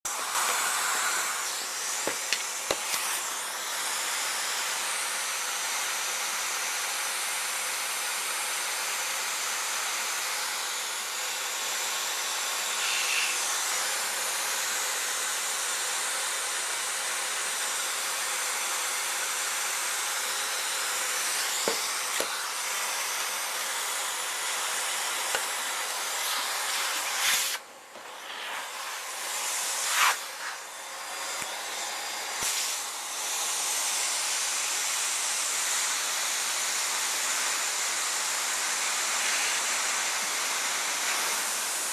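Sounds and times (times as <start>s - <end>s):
vacuum cleaner running: 0.0s - 41.9s.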